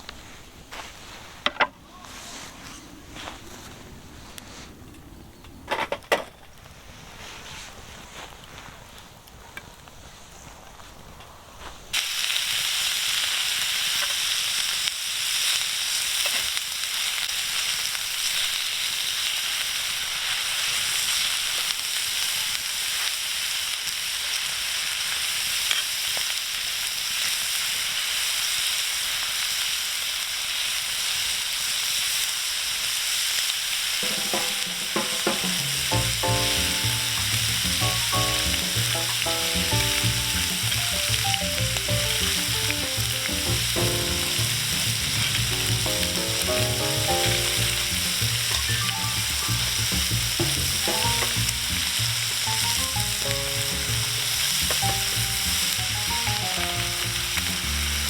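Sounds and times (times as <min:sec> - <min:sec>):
food sizzling in a pan: 0:11.9 - 0:58.0
background music: 0:34.0 - 0:58.0.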